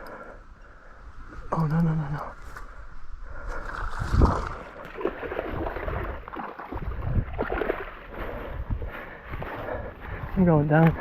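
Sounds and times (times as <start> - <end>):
water splashing around legs: 3.5 - 11.0.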